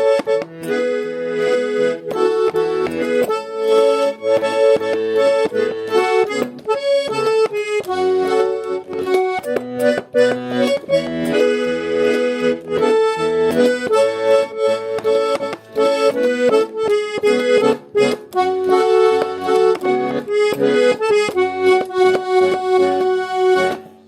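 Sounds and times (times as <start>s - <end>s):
button accordion playing: 0.0s - 24.0s.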